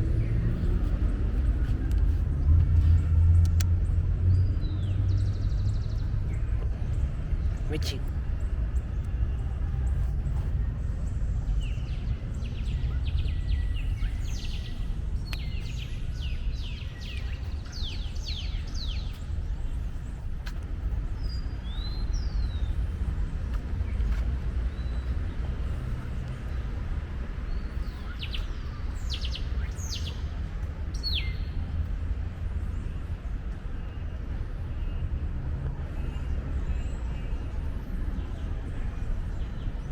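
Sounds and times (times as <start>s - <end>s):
small birds chirping: 9.8s - 35.3s.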